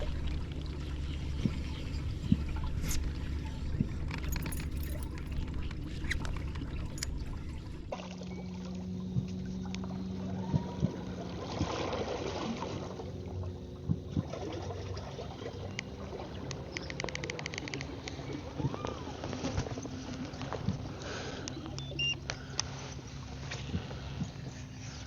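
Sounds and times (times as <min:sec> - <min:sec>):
water lapping around kayak: 0:00.0 - 0:25.0
clicks: 0:15.7 - 0:19.0.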